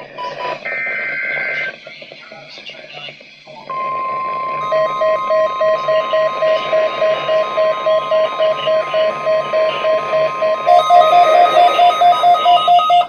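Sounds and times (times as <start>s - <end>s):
alert beeping: 3.7s - 13.0s
steady alarm tone: 3.7s - 13.0s.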